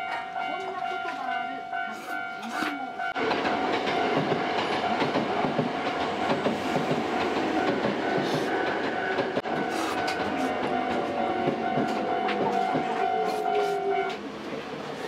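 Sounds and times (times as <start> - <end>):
train wheels clattering on rails: 2.5 - 14.3.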